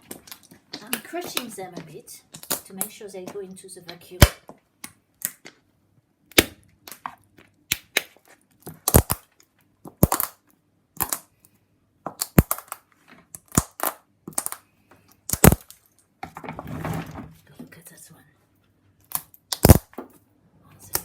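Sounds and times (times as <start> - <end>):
nut shells cracking: 0.0 - 1.6, 2.2 - 3.0, 3.9 - 5.6, 6.3 - 11.5, 12.1 - 16.0, 19.0 - 20.0.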